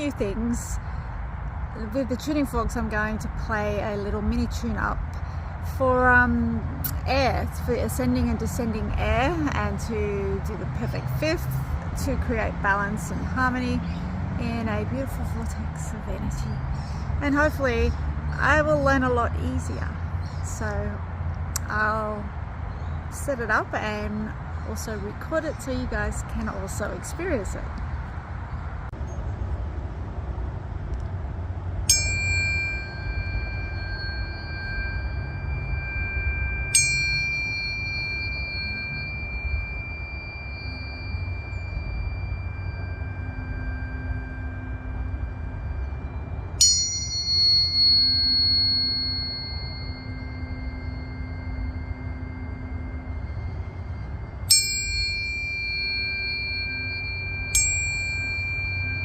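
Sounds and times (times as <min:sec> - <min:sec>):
tuning forks ringing: 0:31.9 - 0:59.0.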